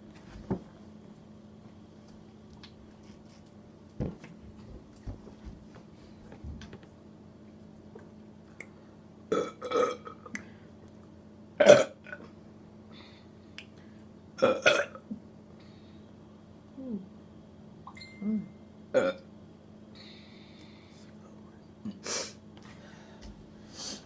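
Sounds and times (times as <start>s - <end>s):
people burping: 9.3s - 10.2s, 11.6s - 12.2s, 14.4s - 15.0s.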